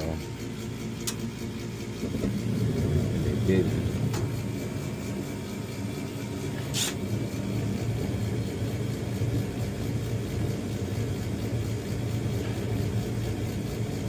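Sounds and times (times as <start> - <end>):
gas furnace humming: 0.0 - 14.0
short hiss: 6.7 - 7.0.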